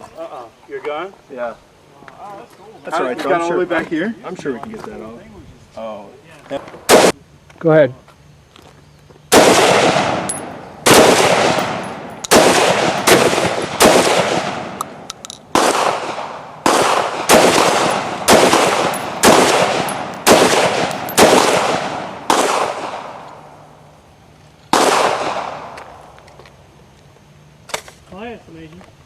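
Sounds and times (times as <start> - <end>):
gunshots with echoing tails: 9.3 - 23.3, 24.8 - 25.8.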